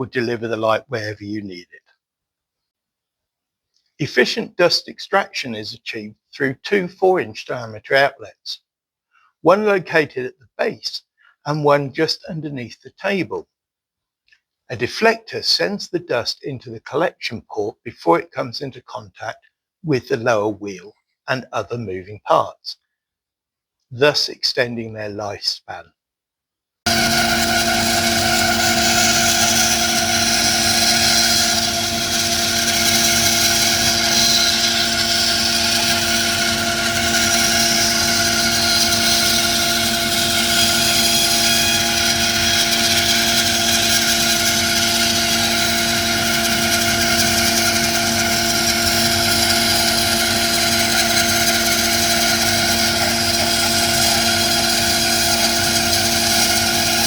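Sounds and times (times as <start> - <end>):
bandsaw running: 26.9 - 57.0.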